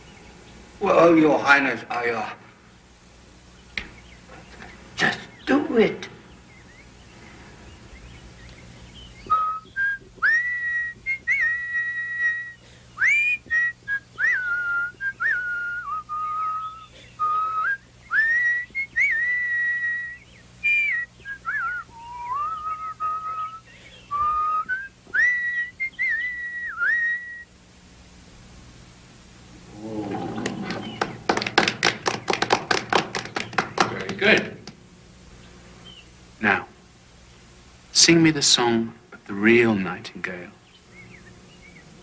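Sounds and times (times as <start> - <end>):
person whistling birdsong: 7.9 - 27.6, 30.5 - 31.3.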